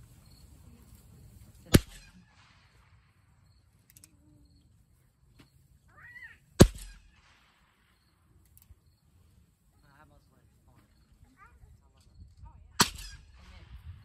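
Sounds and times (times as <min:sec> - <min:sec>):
gunshots with echo: 0:01.7 - 0:02.9, 0:06.6 - 0:07.8.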